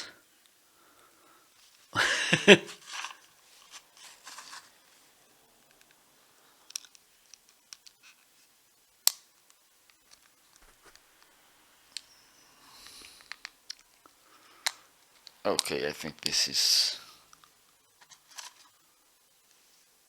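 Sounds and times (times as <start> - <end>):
tape measure rustling: 2.7 - 4.8.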